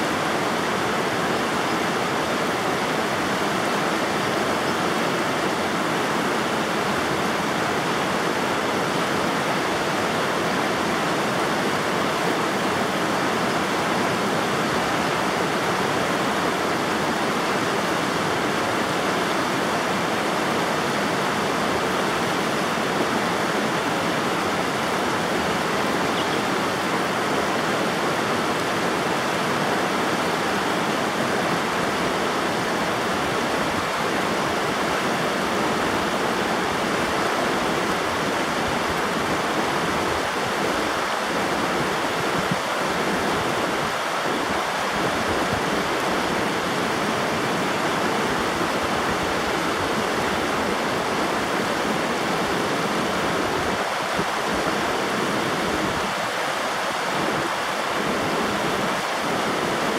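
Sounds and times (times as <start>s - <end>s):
river water rushing: 0.0s - 59.9s.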